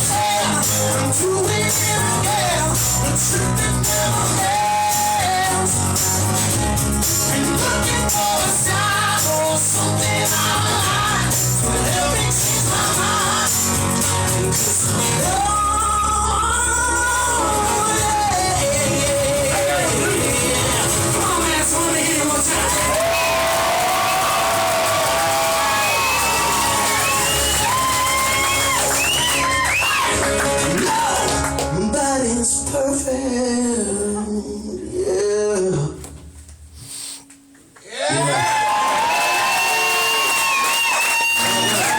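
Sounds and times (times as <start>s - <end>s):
person singing: 0.0s - 6.5s, 7.1s - 29.2s, 30.1s - 36.0s
live rock band playing: 0.0s - 32.9s.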